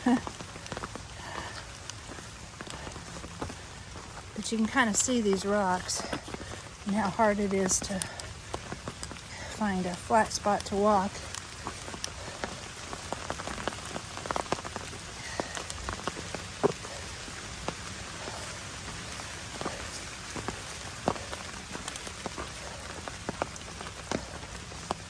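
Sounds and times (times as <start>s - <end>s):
raindrops ticking close by: 0.0s - 25.0s
steady rain falling: 0.0s - 25.0s.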